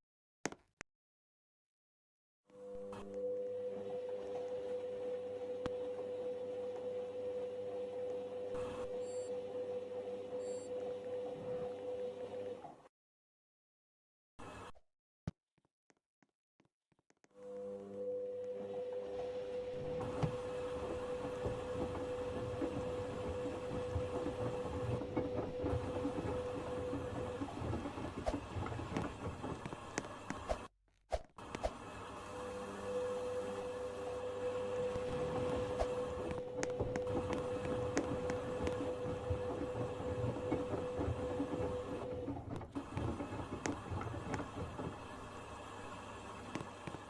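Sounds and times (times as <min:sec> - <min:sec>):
washing machine knocking and rattling: 0:20.2 - 0:29.6, 0:36.4 - 0:45.2.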